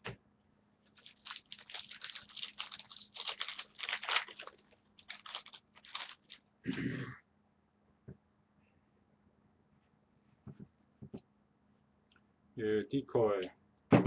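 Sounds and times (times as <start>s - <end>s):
card pack wrapper crinkling and tearing: 0.9s - 6.4s.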